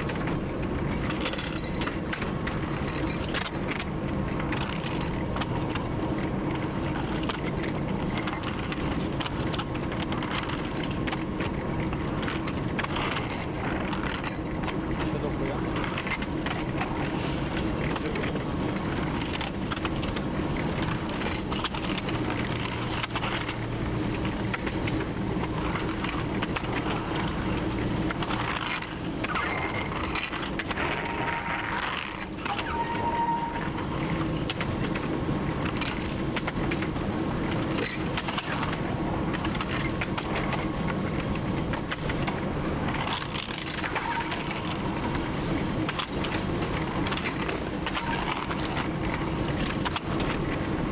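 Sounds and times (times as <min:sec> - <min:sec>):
locomotive engine hum: 0:00.0 - 0:50.9
wheels clattering on rails: 0:00.0 - 0:50.9
faint high squeals: 0:32.4 - 0:33.8.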